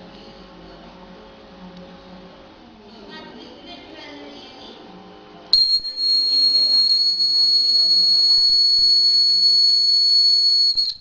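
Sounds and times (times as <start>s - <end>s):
high-pitched alarm buzzer: 5.6s - 10.8s.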